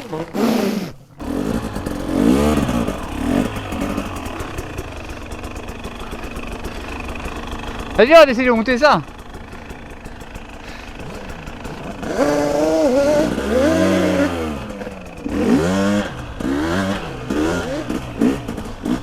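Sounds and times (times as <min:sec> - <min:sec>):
two-stroke engine revving hard: 0:00.0 - 0:19.0.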